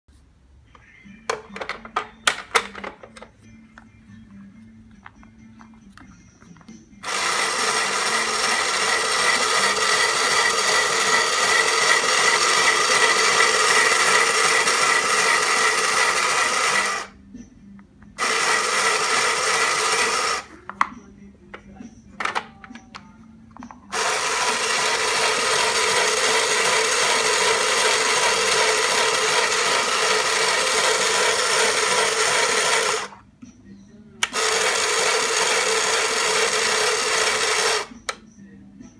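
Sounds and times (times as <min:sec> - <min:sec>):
toy sewing machine running: 0:07.0 - 0:17.2, 0:18.2 - 0:20.5, 0:23.9 - 0:33.2, 0:34.2 - 0:38.0.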